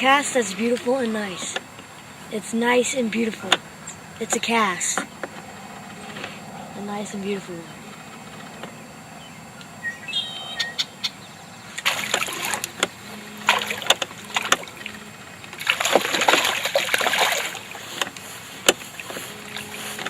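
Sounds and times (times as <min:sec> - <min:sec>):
fish splashing in water: 0:11.8 - 0:20.0.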